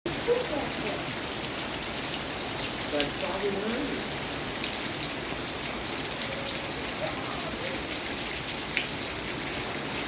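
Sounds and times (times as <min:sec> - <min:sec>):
steady rain falling: 0:00.1 - 0:10.0.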